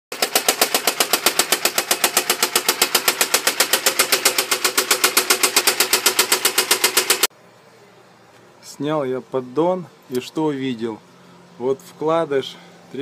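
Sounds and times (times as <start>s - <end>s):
car engine with rhythmic knock: 0.1s - 7.3s.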